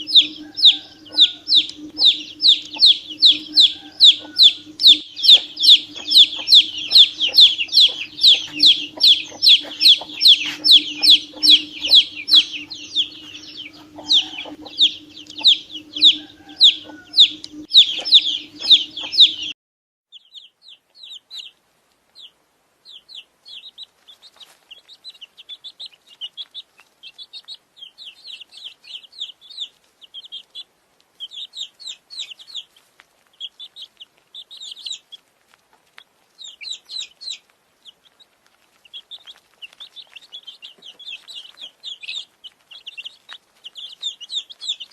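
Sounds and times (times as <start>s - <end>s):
steady low hum: 0.0s - 19.5s
chicks peeping: 0.0s - 44.9s.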